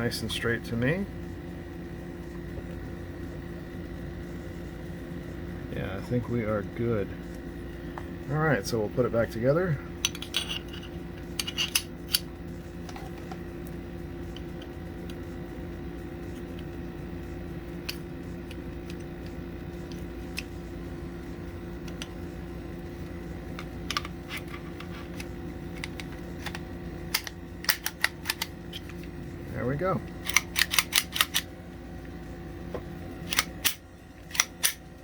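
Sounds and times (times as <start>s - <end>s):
steady low hum: 0.0s - 35.0s
pistol parts clicking: 25.8s - 28.9s, 30.2s - 31.5s, 33.3s - 34.8s.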